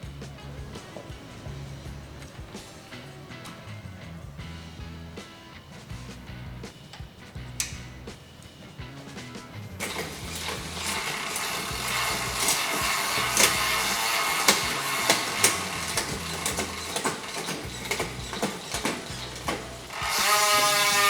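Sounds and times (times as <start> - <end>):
background music: 0.0 - 21.0
mechanical clicks from bicycle parts: 5.8 - 21.0.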